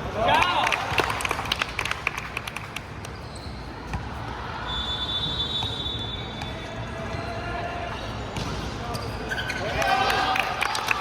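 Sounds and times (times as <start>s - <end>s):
high sneaker squeak: 3.1s - 9.8s.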